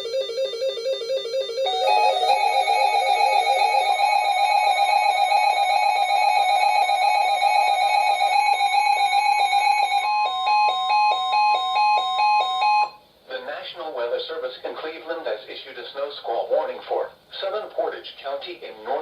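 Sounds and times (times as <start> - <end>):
trilling alarm melody: 0.0 - 13.0
rapid pulsed beeping: 1.0 - 7.0
steady warning tone: 1.0 - 13.0.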